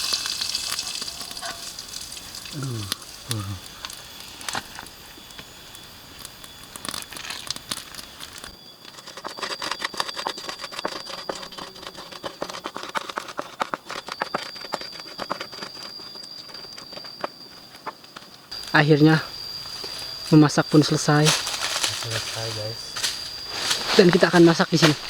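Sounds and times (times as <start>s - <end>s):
food sizzling in a pan: 0.0s - 3.4s
high thin tone: 18.5s - 25.0s.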